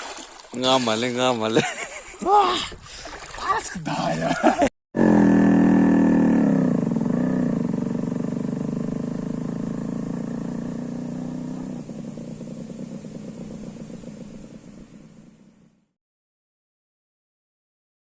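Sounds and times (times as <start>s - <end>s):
engine running: 5.0s - 15.9s.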